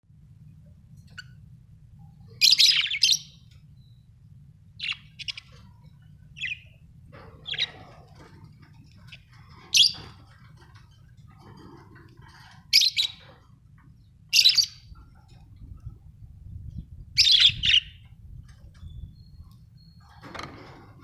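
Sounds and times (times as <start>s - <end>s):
faint low hum: 0.1s - 21.0s
budgerigars chirping: 2.4s - 3.6s, 4.8s - 10.8s, 11.4s - 13.4s, 14.3s - 15.0s, 17.2s - 18.2s.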